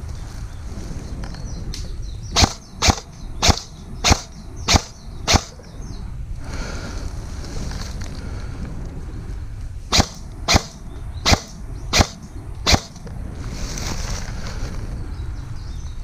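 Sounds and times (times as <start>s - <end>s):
airsoft gun shots: 2.4s - 5.6s, 9.9s - 13.1s
outdoor rustle: 6.4s - 16.0s.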